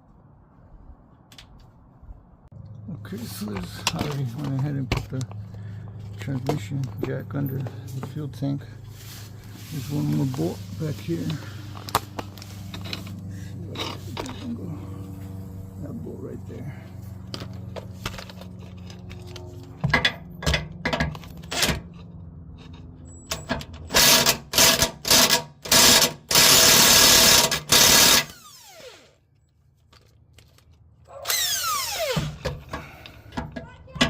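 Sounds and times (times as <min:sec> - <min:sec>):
power tool running in bursts: 0:23.9 - 0:29.1, 0:31.3 - 0:32.4.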